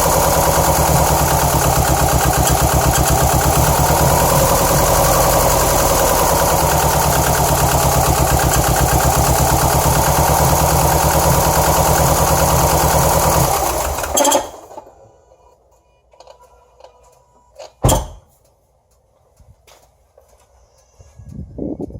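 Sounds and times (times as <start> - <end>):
car engine idling roughly: 0.0 - 14.8.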